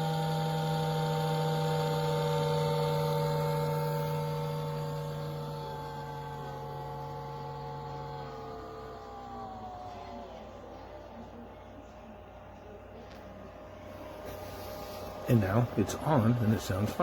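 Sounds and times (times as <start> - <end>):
toaster oven droning hum: 0.0 - 17.0.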